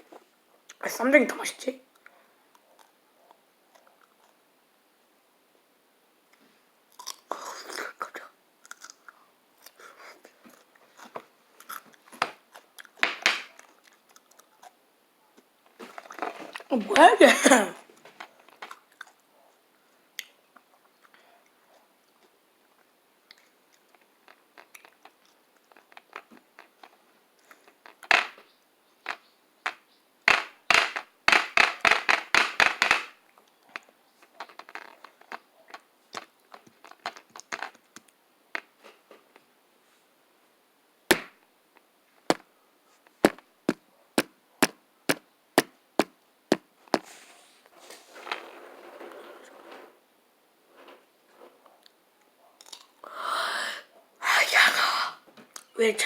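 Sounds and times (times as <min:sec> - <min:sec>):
cucumber crunching while chewed: 0:07.0 - 0:07.8, 0:08.6 - 0:09.8.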